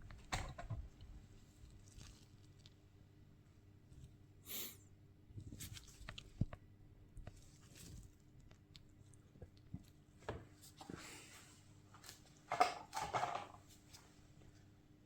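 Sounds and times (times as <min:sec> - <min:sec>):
soft rustle: 0:07.2 - 0:09.2.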